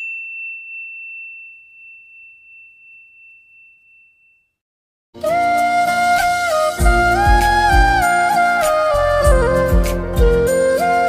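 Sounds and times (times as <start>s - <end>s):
high clear bell ding: 0.0s - 4.6s
flute melody music: 5.2s - 11.0s.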